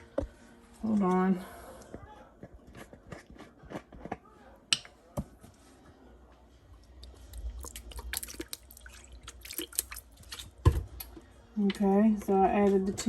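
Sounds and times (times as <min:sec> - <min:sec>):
liquid pouring and dripping: 0:06.8 - 0:11.2.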